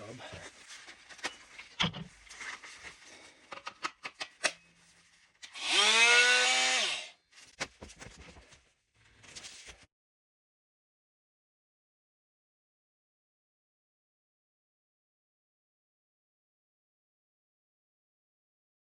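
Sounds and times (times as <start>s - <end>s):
power tool motor spinning: 5.5s - 7.2s.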